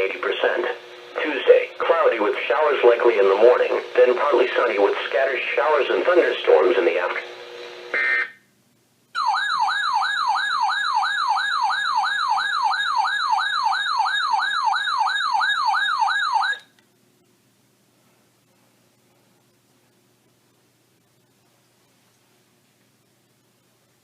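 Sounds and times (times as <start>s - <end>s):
weather alert siren whooping: 9.2s - 16.7s.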